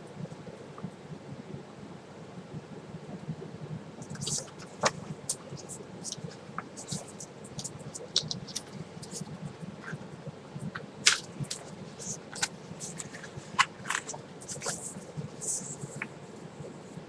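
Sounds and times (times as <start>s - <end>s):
paper pages rustling: 4.1s - 10.0s, 10.7s - 16.1s.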